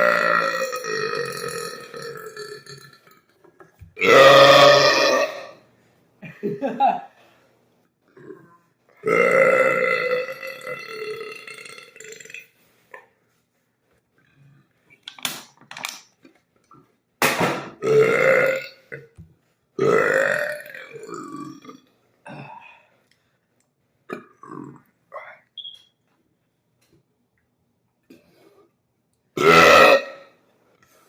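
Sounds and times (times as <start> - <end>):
gravelly belches: 0.0 - 3.3, 4.0 - 5.5, 8.1 - 12.4, 17.8 - 19.2, 19.8 - 21.8, 24.1 - 24.9.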